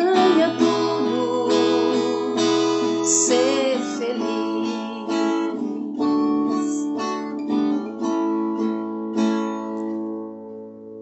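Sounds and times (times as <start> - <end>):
acoustic guitar strumming: 0.0 - 11.0.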